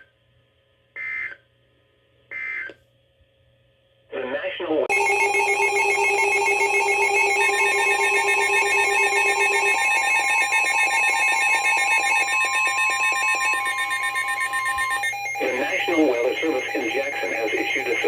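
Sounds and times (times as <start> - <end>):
high steady tone: 4.9 - 18.0
two-tone alert tone: 4.9 - 18.0.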